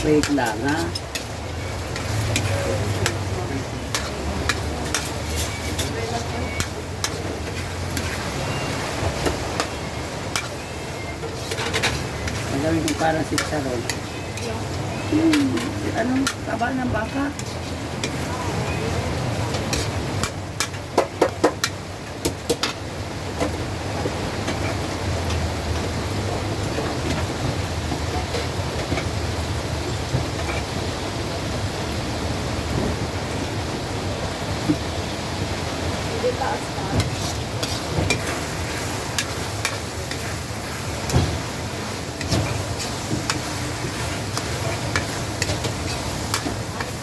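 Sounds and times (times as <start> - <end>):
metal utensil scraping a pan: 0.0 - 3.2, 3.8 - 16.6, 37.0 - 47.0
rain hissing: 0.0 - 20.9, 22.8 - 47.0
food sizzling in a pan: 0.0 - 21.9, 35.9 - 47.0.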